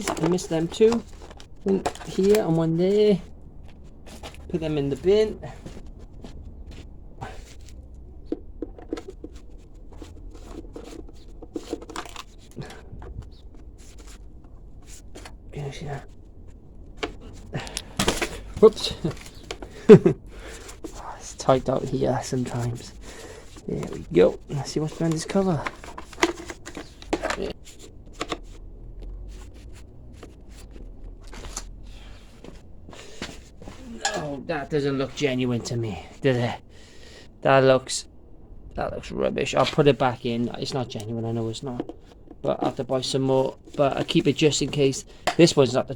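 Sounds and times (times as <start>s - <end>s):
plastic bodywork clicks and scrapes: 0.0s - 36.2s, 39.5s - 45.9s
rustling: 0.0s - 37.2s, 38.9s - 45.9s
clicks and taps on plastic: 45.2s - 45.4s.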